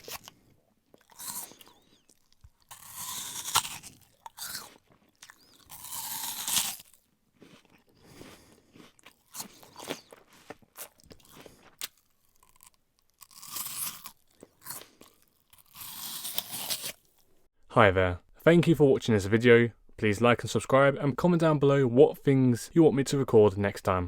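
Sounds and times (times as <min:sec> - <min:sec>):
person crunching an apple: 0:00.0 - 0:17.4.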